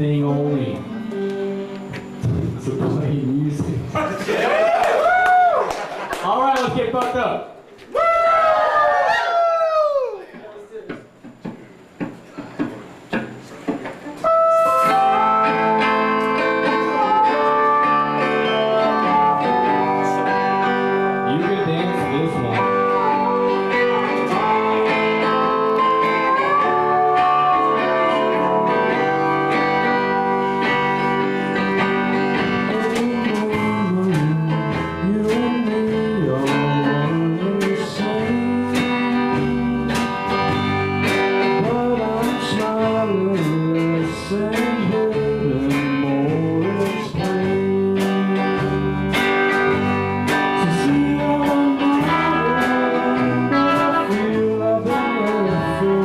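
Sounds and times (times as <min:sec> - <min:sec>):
live band playing guitar song: 0:00.0 - 0:04.0, 0:11.4 - 0:56.0
bass line: 0:14.2 - 0:56.0.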